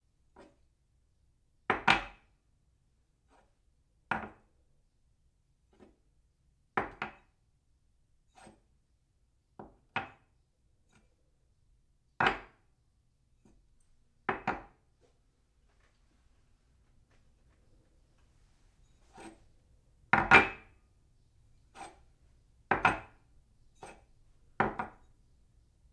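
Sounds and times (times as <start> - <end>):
faint scraping: 15.0 - 19.6.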